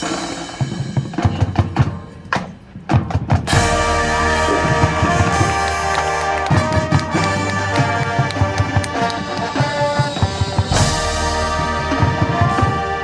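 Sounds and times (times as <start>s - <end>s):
marching drumline: 0.0s - 13.0s
brass chords: 3.5s - 13.0s.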